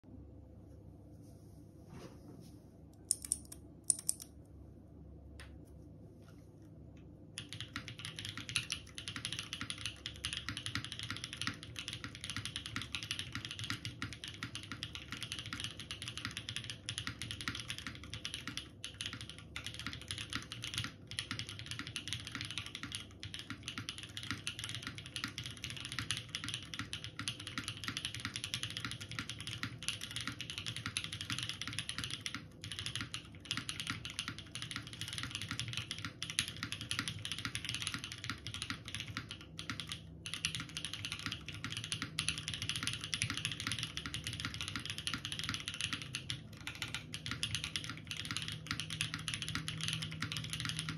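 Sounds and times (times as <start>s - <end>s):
keyboard key clicks: 3.0s - 4.3s
mechanical keyboard typing: 3.0s - 4.3s, 7.4s - 50.9s.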